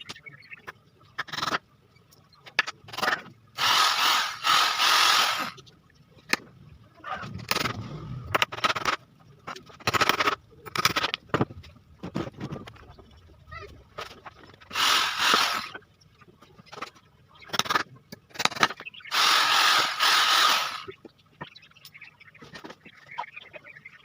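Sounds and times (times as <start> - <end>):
handheld power tool running: 3.6 - 5.6, 14.7 - 15.7, 19.1 - 20.9.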